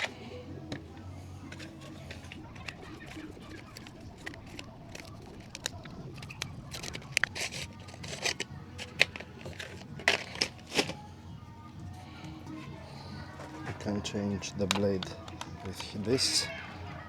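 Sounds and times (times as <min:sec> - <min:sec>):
packaging crinkling: 0:00.0 - 0:11.0
clicks and scrapes: 0:00.0 - 0:11.1.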